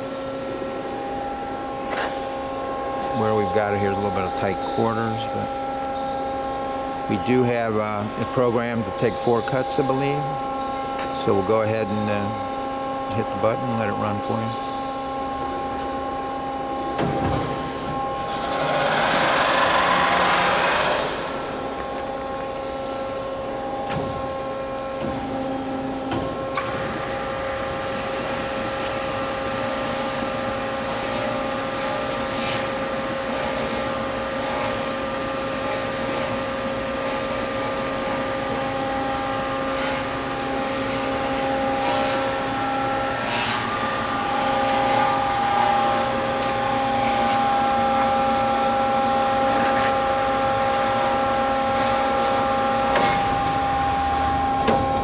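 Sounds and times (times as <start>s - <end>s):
high-pitched whine: 0.0s - 14.9s, 26.6s - 55.0s
band saw machine hum: 0.0s - 55.0s.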